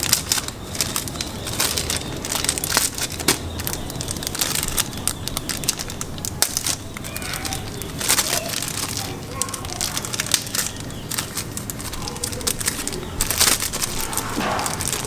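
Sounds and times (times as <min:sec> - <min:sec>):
plastic bag crinkling: 0:00.0 - 0:15.0.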